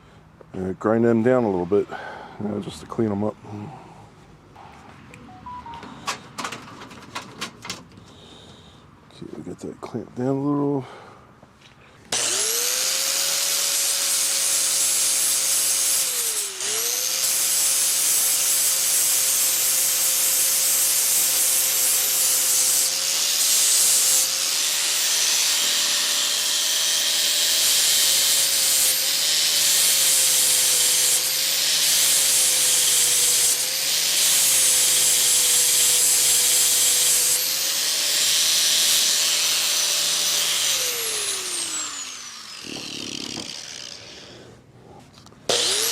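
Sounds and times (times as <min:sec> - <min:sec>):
angle grinder grinding metal: 0:12.2 - 0:44.5, 0:45.5 - 0:45.9.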